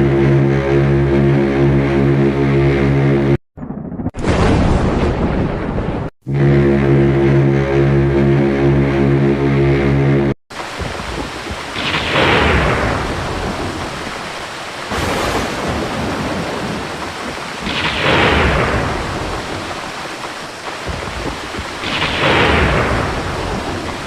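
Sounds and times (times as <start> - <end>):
rain: 10.5 - 24.0
wind: 10.5 - 24.0.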